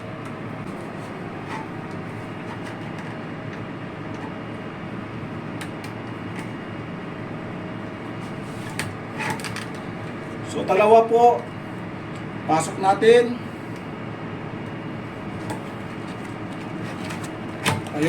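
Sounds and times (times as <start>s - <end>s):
machinery hum: 0.0s - 18.0s.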